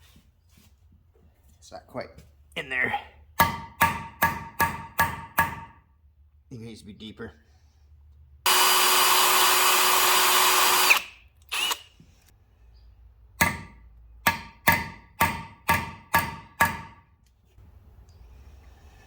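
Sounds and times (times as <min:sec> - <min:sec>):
hammer strikes on metal: 0:03.4 - 0:05.9, 0:13.4 - 0:17.1
electric drill running: 0:08.5 - 0:11.9.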